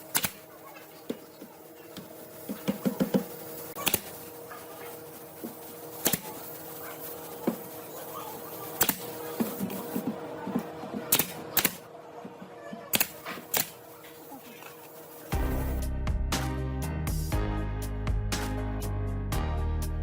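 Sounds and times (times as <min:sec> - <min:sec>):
steady hum: 0:00.0 - 0:16.0.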